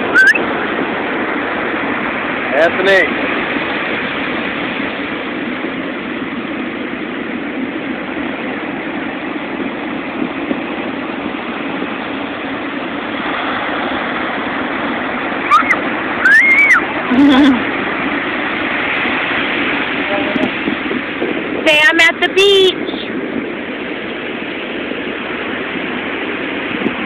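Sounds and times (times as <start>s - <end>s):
ocean surf: 0.0s - 27.0s
wind on microphone: 0.0s - 27.0s
high squeals: 0.1s - 0.5s, 15.4s - 17.0s.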